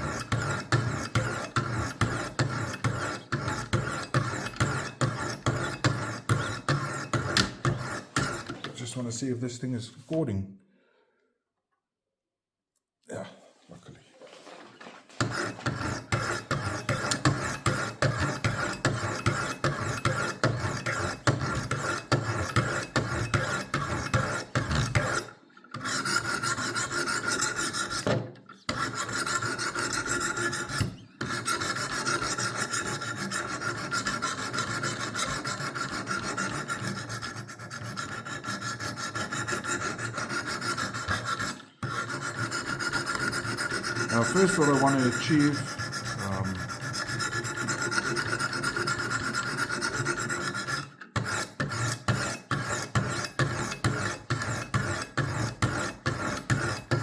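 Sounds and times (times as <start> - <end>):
sharpening stones rasping on knife: 0.0 - 8.8, 15.2 - 57.0.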